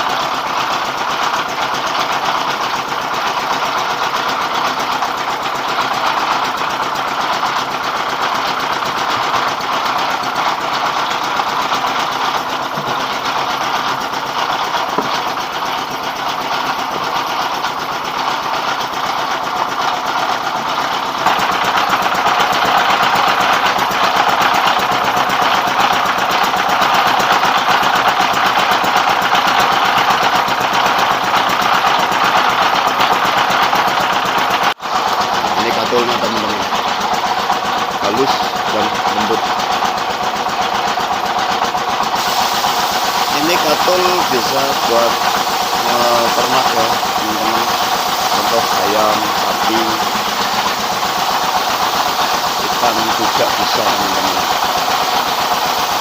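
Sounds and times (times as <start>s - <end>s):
diesel engine running rice mill: 0.0s - 56.0s.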